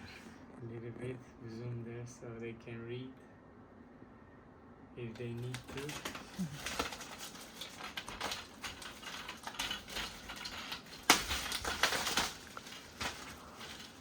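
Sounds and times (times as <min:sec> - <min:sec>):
plastic parts clattering: 0:05.1 - 0:14.0
plastic parts clicking and rustling: 0:05.1 - 0:14.0.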